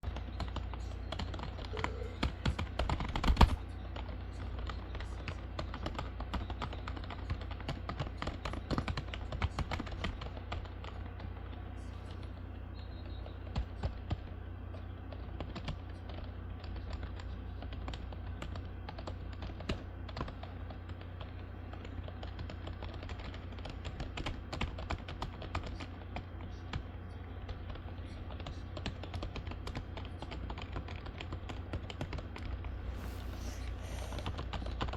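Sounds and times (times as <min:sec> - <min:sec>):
low hum: 0:08.1 - 0:34.9.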